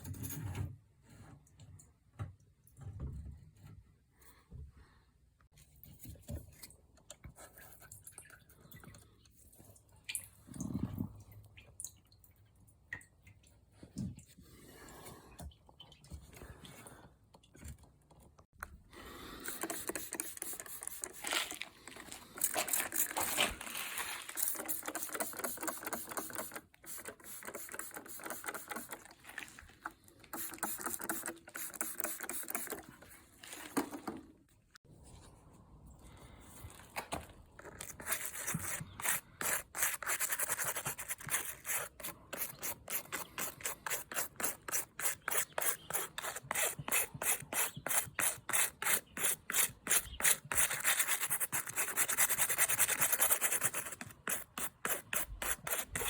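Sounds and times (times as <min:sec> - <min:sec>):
hand rubbing and scraping strokes: 0:19.0 - 0:34.1, 0:34.8 - 0:56.0.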